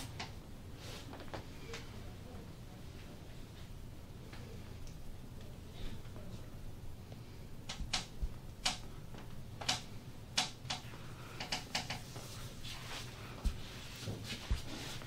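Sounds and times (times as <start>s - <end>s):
hands brushing over skin: 12.1s - 15.0s.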